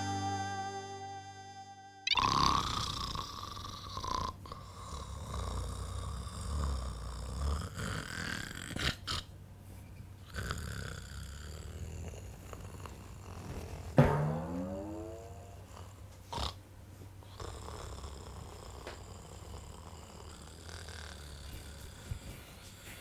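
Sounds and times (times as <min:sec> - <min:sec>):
music: 0:00.0 - 0:02.1, 0:14.0 - 0:15.6
man snoring: 0:02.1 - 0:08.8, 0:10.3 - 0:12.3, 0:17.3 - 0:22.0.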